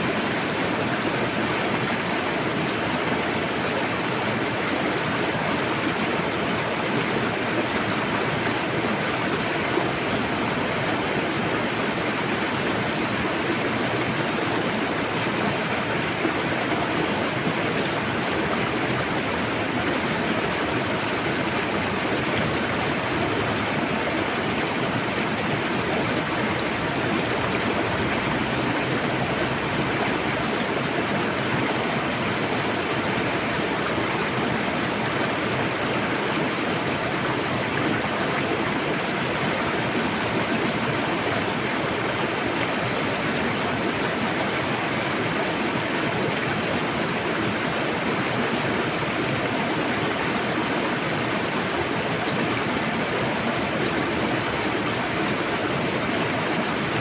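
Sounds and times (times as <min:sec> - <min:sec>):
river rushing over rocks: 0:00.0 - 0:57.0.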